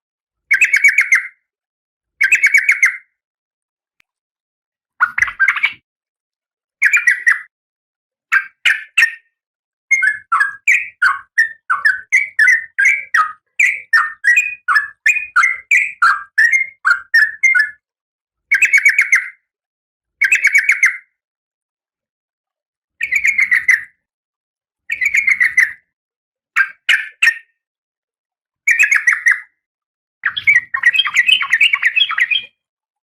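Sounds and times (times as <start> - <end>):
bird calling rapid notes: 5.0 - 5.8, 30.2 - 32.6.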